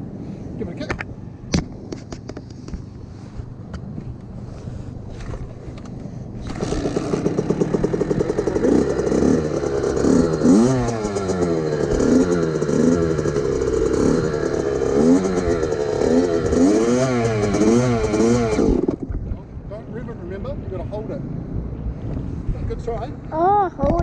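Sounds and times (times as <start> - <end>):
dirt bike engine revving: 6.4 - 19.2.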